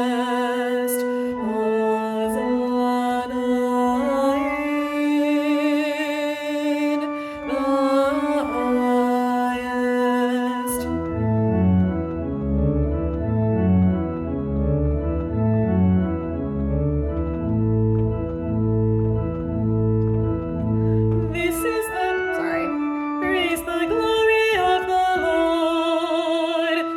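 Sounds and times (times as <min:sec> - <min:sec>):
organ-toned keyboard chords: 0:00.0 - 0:26.9.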